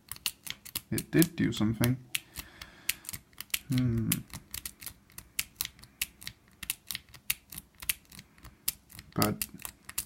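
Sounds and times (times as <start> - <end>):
person humming: 3.7 - 4.3.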